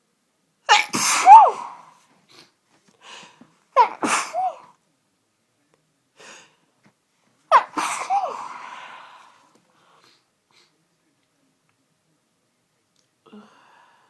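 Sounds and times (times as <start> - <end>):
woman sneezing: 0.7 - 2.0, 3.8 - 4.7, 7.5 - 9.0
woman breathing in: 8.2 - 10.2, 13.3 - 14.0.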